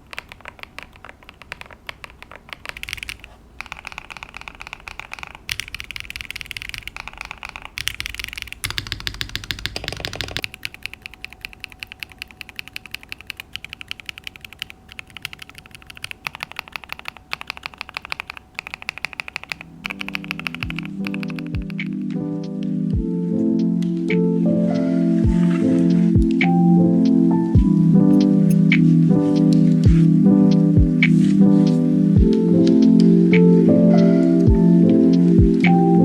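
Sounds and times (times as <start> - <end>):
mechanical keyboard typing: 0.0 - 23.0.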